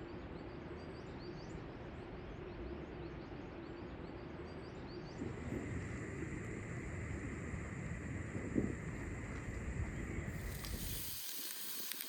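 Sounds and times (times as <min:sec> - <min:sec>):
low rush: 0:05.2 - 0:12.0.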